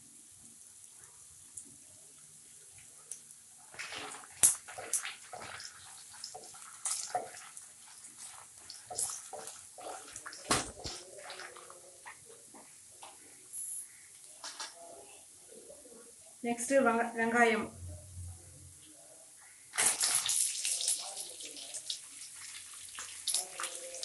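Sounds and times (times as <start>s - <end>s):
spices sizzling in oil: 0.0s - 11.2s, 19.7s - 24.0s
spatula scraping a pan: 3.8s - 11.6s.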